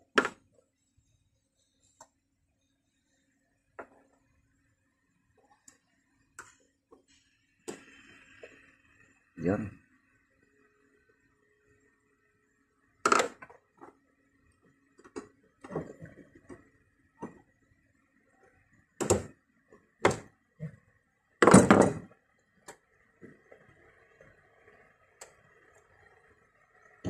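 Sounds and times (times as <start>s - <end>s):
tools and car parts knocking: 0.0s - 0.6s, 13.1s - 14.0s, 19.0s - 19.4s, 20.0s - 20.4s, 21.4s - 22.8s.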